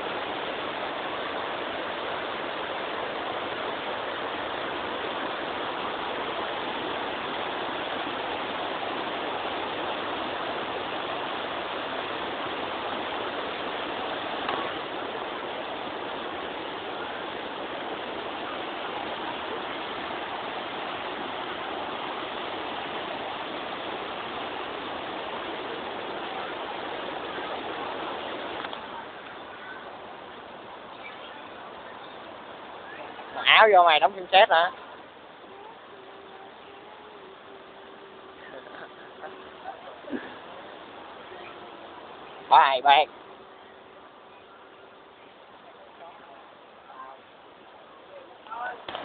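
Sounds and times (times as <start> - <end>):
waterfall rushing: 0.0 - 49.0.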